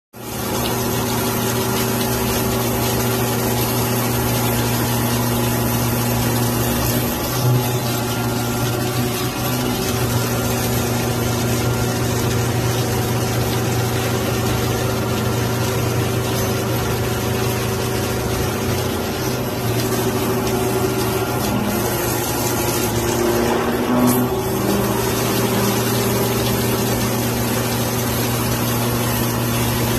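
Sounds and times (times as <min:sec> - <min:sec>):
multi-tone machine hum: 0:00.2 - 0:29.9
milling machine cutting steel: 0:01.0 - 0:14.1, 0:15.4 - 0:29.9.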